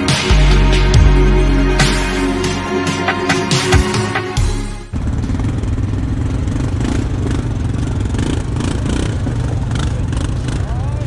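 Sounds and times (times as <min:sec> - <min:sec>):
atv engine running: 0:04.9 - 0:11.0.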